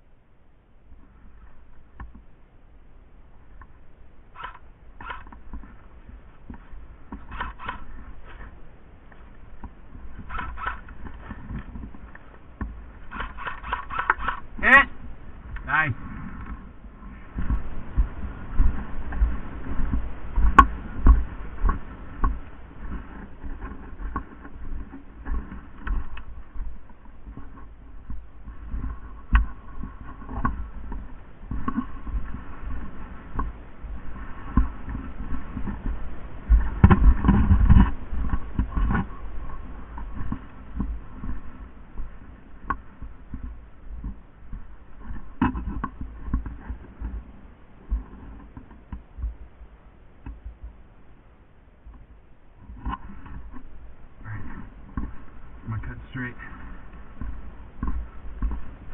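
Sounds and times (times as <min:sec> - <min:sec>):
rustling: 0:00.8 - 0:58.9
sharp clicks: 0:04.3 - 0:05.6, 0:07.1 - 0:08.0, 0:09.1 - 0:15.7
low thumps: 0:09.2 - 0:49.6.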